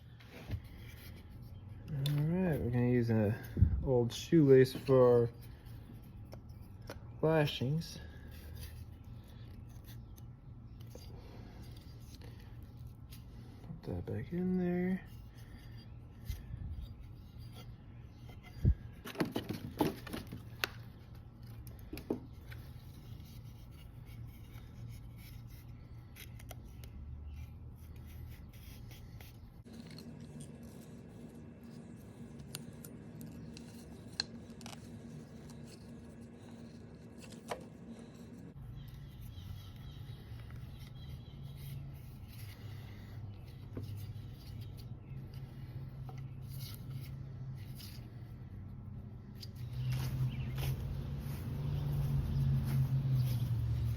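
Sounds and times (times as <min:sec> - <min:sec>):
steady low hum: 0:00.0 - 0:53.9
shoelace rubbing and scraping: 0:49.2 - 0:53.9.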